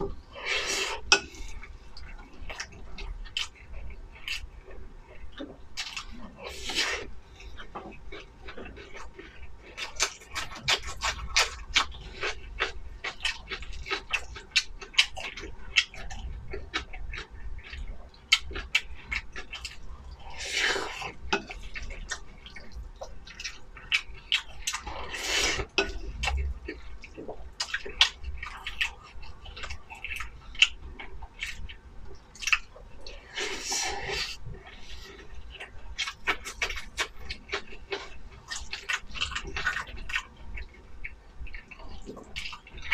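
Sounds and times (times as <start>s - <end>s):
chewing mouth clicks and smacks: 25.8s - 33.2s.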